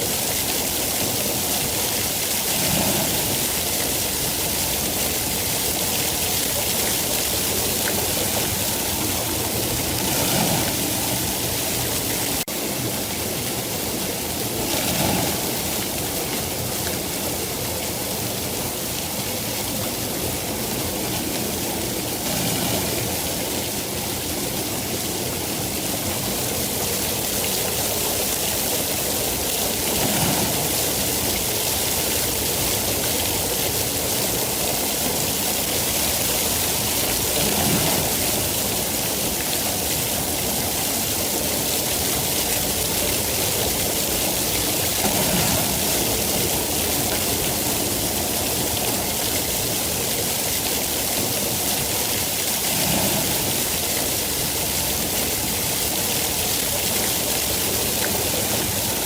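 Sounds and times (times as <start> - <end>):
steady rain hiss: 0.0 - 59.0.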